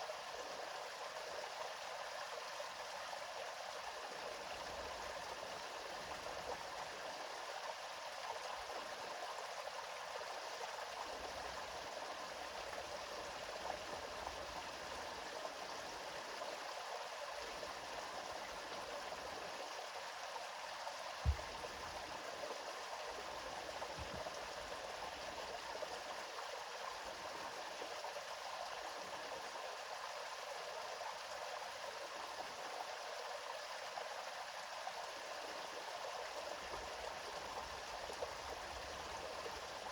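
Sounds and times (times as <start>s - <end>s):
low thump: 21.3s - 21.5s.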